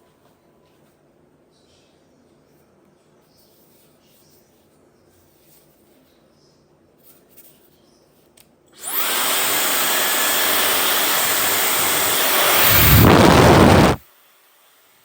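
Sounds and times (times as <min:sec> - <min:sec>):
hair dryer blowing air: 0:08.8 - 0:14.0.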